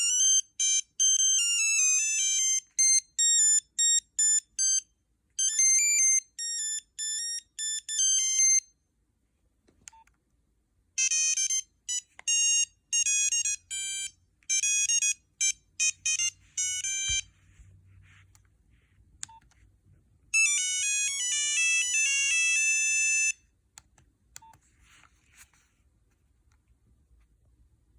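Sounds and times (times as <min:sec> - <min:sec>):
phone ringtone beeping melodies: 0:00.0 - 0:08.7, 0:11.0 - 0:17.4, 0:20.3 - 0:23.4.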